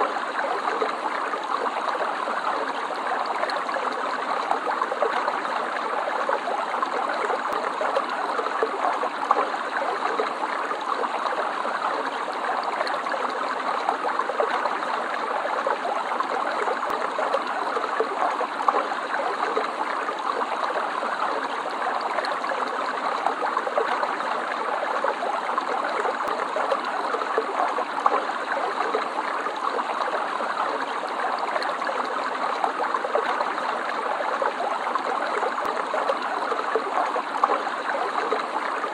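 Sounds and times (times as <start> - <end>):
stream trickling over stones: 0.0 - 38.9.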